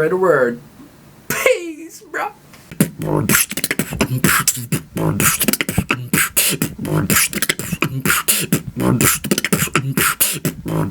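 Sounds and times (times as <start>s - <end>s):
beatboxing snare and hi-hat: 2.7s - 10.9s
hummed bass notes: 2.7s - 10.9s.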